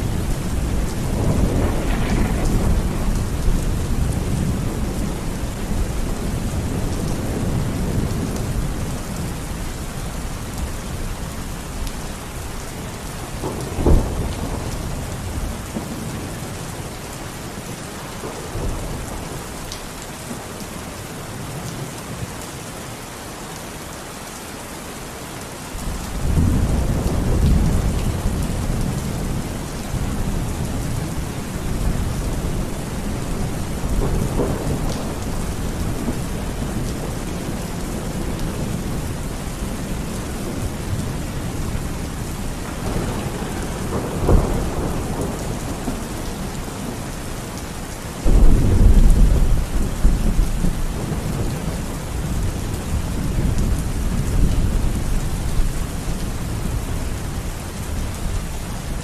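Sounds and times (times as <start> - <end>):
rolling thunder: 0.0 - 9.3, 13.4 - 16.4, 26.0 - 47.4, 48.2 - 55.7
steady rain falling: 0.0 - 59.0.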